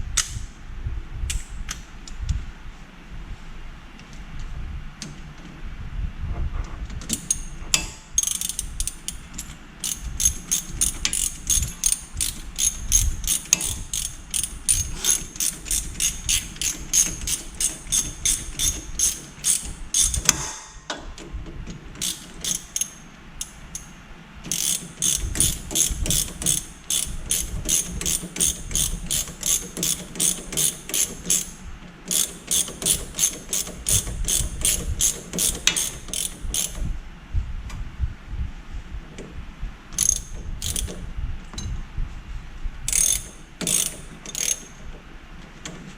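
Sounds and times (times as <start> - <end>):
ratchet wrench clicking: 7.1 - 20.5, 22.0 - 23.9, 24.5 - 36.9, 40.0 - 41.0, 42.9 - 44.8.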